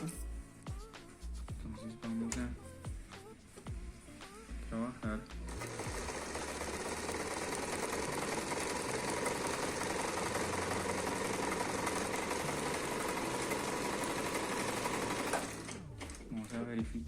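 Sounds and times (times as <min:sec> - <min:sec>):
sewing machine running: 0:05.5 - 0:16.8.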